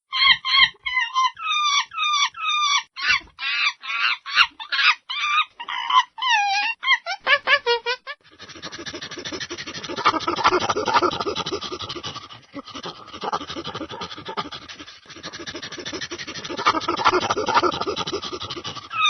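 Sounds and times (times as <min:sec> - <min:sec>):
monkey squealing calls: 0:00.1 - 0:07.6, 0:08.4 - 0:19.0
monkey chattering: 0:08.2 - 0:19.0.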